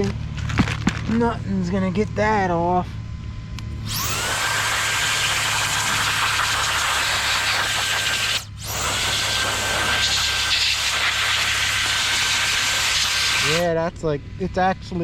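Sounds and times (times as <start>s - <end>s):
electric air duster whining: 3.8s - 13.7s.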